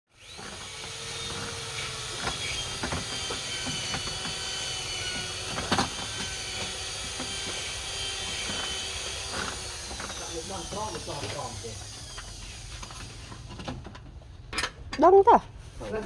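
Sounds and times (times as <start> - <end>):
wood lathe motor whining: 0.2 - 13.8.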